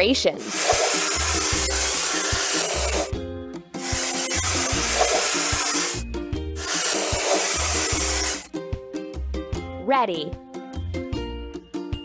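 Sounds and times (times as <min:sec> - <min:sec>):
aerosol spray hissing: 0:00.4 - 0:03.2, 0:03.8 - 0:06.0, 0:06.6 - 0:08.5
cheerful children's music: 0:01.2 - 0:12.0.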